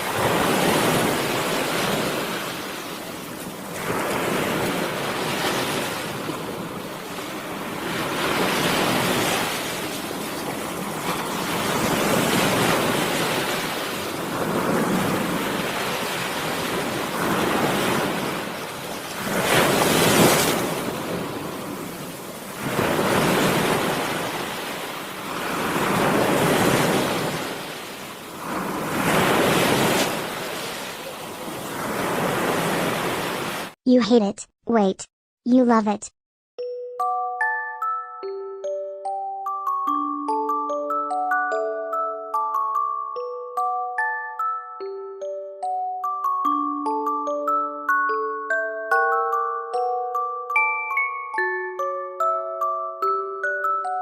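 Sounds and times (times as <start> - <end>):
ocean waves breaking: 0.0 - 33.8.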